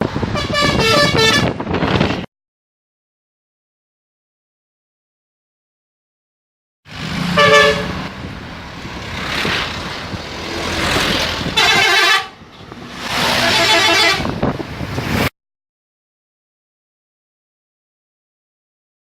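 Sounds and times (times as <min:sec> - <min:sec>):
bus musical horn blasts: 0:00.2 - 0:01.7, 0:07.3 - 0:08.1, 0:11.5 - 0:14.5
rushing noise: 0:06.9 - 0:15.3.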